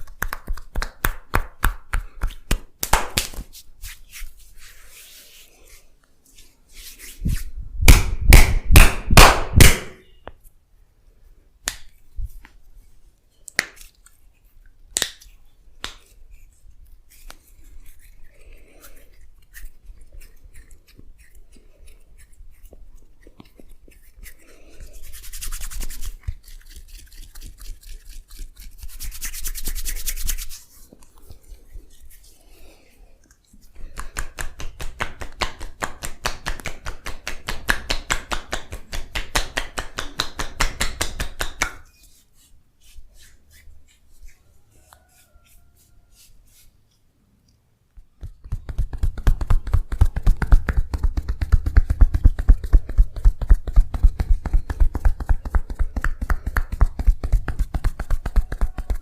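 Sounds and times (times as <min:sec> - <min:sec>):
hands slapping skin: 0:00.0 - 0:04.3, 0:07.0 - 0:10.0, 0:11.6 - 0:12.6, 0:13.5 - 0:14.0, 0:14.9 - 0:16.1, 0:25.0 - 0:30.6, 0:33.7 - 0:42.0, 0:48.2 - 0:59.0
hands rubbing friction strokes: 0:00.0 - 0:09.0, 0:11.6 - 0:47.1, 0:48.0 - 0:59.0.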